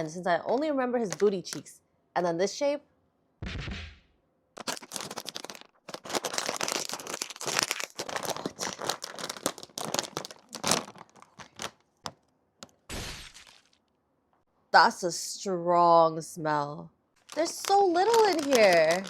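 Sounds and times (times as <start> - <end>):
snack bag crinkling: 4.6 - 12.7, 17.2 - 19.0.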